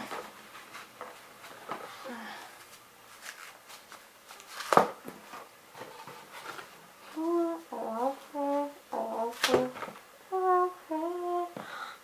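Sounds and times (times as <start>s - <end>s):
packaging rustling: 3.1s - 6.8s
girl humming: 7.1s - 11.9s.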